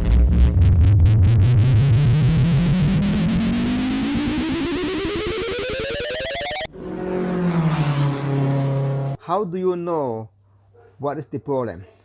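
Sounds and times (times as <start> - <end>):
accelerating pulse: 0.0 - 9.2
distorted guitar-like rising tone: 0.0 - 9.2.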